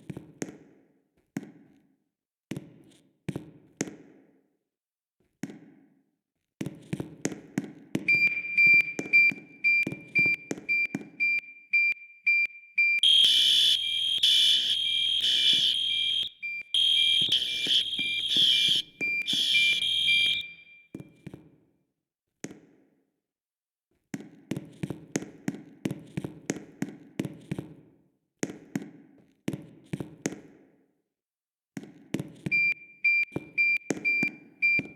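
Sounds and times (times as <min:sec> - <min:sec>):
high alarm beep: 0:08.1 - 0:20.8, 0:32.5 - 0:34.9
loud horn-like alarm pulses: 0:13.0 - 0:20.8.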